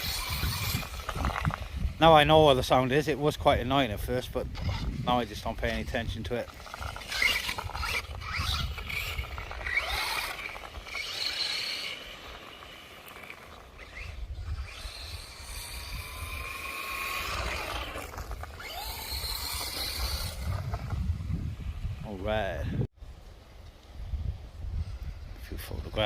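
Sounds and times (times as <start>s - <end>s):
electric motor whining: 0.0s - 2.1s, 4.4s - 21.9s
wind rumbling on microphone: 0.0s - 26.0s.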